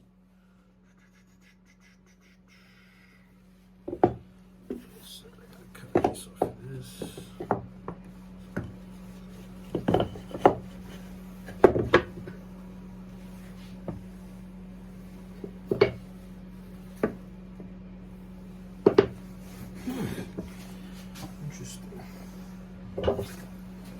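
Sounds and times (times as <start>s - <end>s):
steady low hum: 0.0s - 23.9s
wooden parts and tools clattering: 9.7s - 12.4s.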